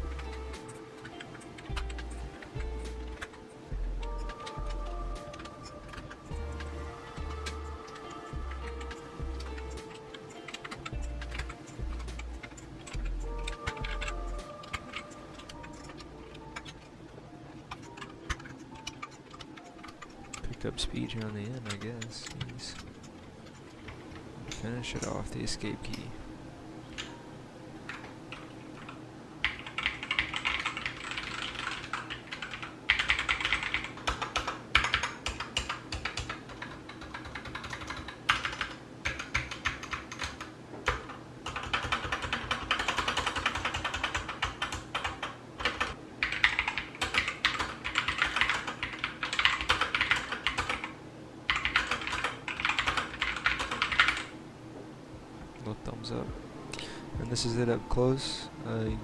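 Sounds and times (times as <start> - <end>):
mechanical keyboard typing: 17.7 - 26.1, 27.9 - 54.3.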